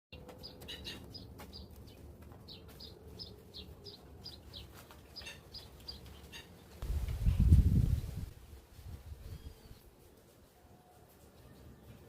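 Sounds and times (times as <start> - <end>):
small birds chirping: 0.1 - 6.8.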